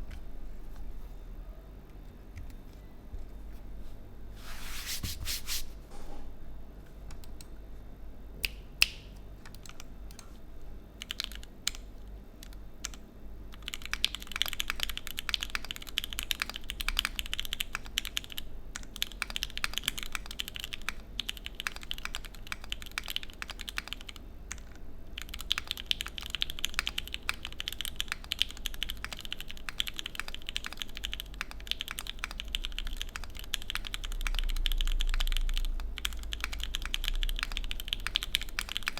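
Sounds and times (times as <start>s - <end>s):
typing on mechanical keyboard: 11.0s - 11.8s, 12.4s - 38.9s.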